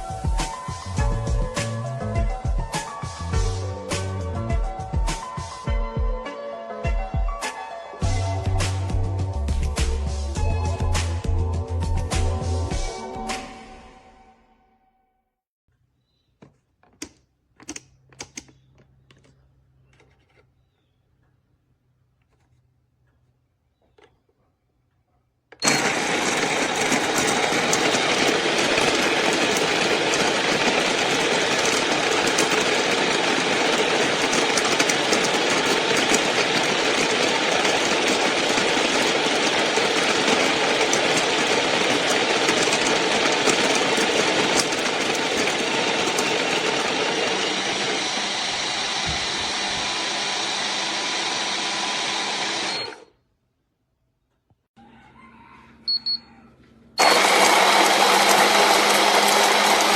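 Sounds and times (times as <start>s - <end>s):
coffee grinder grinding beans: 25.5s - 53.1s, 57.0s - 59.9s.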